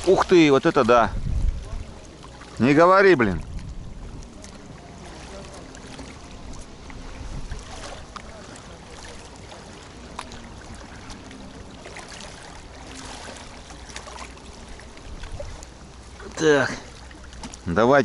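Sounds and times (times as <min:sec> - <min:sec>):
wind rumbling on microphone: 0:00.0 - 0:05.2, 0:06.2 - 0:08.4, 0:14.5 - 0:16.0
small waves lapping: 0:00.0 - 0:18.0.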